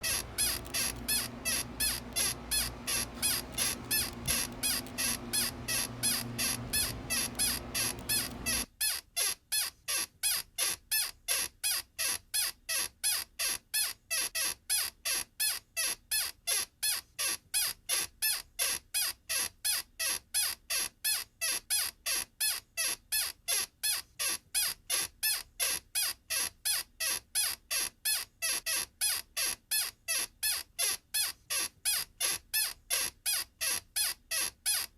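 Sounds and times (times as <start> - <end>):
low background hum: 0.0 - 8.7
high-pitched squeak: 0.0 - 13.9.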